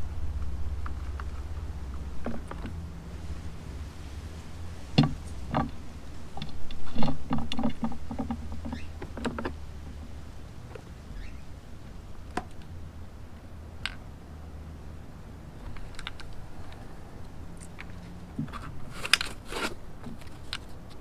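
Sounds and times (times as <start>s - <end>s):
hard objects knocking and rattling: 0.3s - 3.4s, 4.5s - 11.0s, 15.6s - 21.0s.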